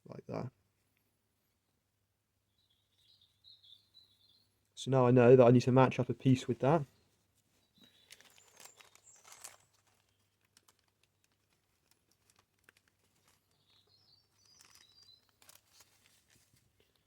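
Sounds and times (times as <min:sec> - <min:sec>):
small parts clicking and rustling: 0:07.8 - 0:13.6
faint high chirping: 0:13.2 - 0:16.1.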